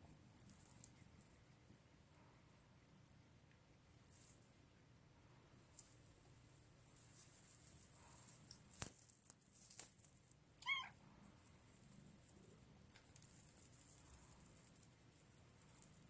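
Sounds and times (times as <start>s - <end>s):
kitten mewing: 10.6s - 11.0s.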